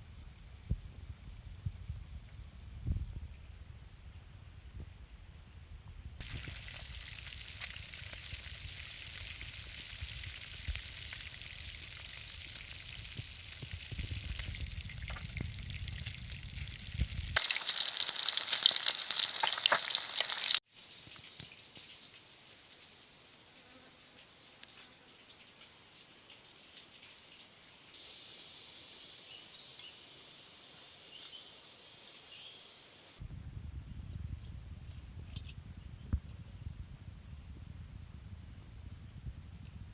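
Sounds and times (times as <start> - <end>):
high insect tone: 17.4 - 33.2
insects buzzing and chirping: 17.4 - 33.2.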